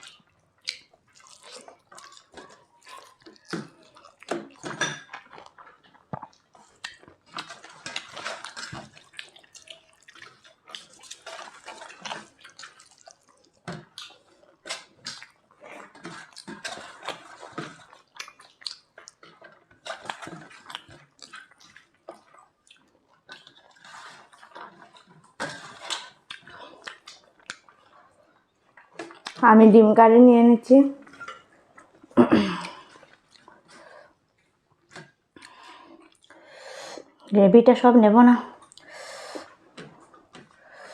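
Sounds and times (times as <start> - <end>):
wet eating and chewing: 0.0 - 29.8, 30.9 - 37.3, 38.5 - 40.9.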